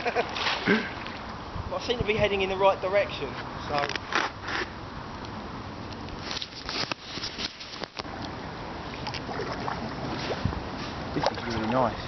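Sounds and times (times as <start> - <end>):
steady water wash: 8.1 - 12.0
kayak paddle splashes: 8.8 - 10.6.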